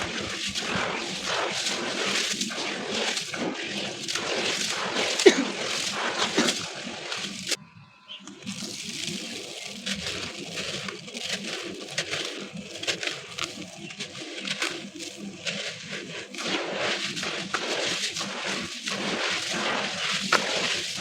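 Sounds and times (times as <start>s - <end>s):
wet concrete crumbling in water: 0.0s - 7.6s, 8.4s - 21.0s.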